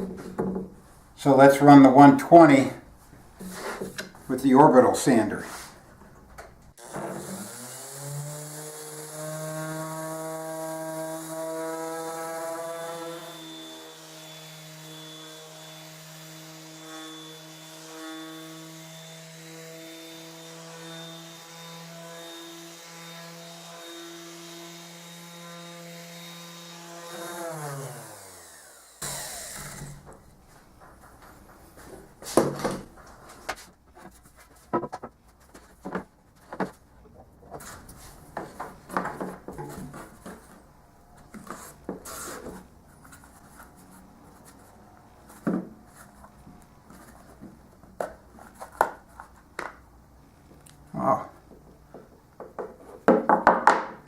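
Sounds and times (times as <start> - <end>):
orbital sander humming: 12.5 - 30.1
motor winding down: 28.0 - 30.0
knocks and rubbing: 30.8 - 36.8.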